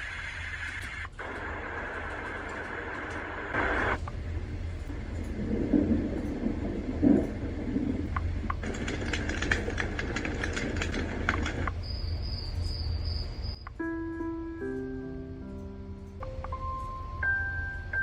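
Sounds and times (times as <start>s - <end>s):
dense crackling clicks: 0.0s - 17.1s
low rumbling noise: 0.0s - 18.0s
high insect-like trill: 11.7s - 13.8s.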